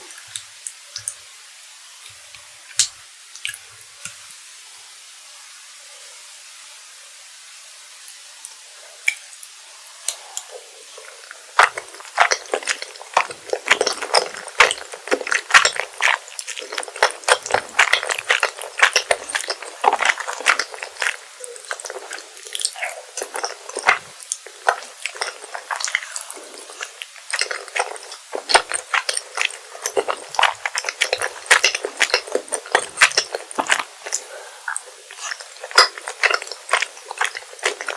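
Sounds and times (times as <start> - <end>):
wet squishy chewing: 10.1 - 37.9.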